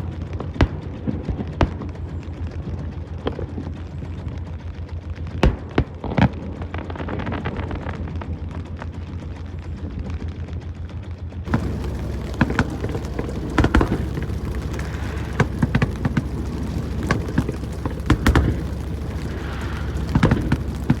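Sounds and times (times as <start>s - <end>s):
steady low rumble: 0.0s - 21.0s
firework shells booming: 11.5s - 21.0s.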